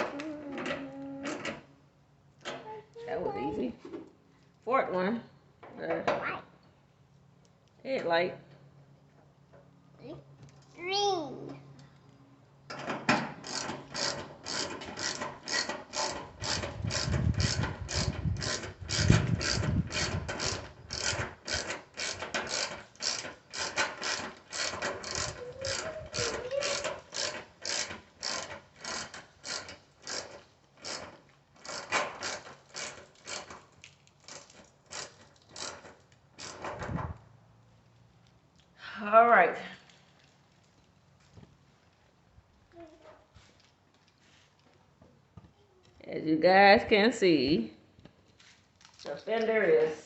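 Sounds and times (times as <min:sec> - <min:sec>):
hand ratchet clicking: 0:13.4 - 0:33.6, 0:34.3 - 0:36.8.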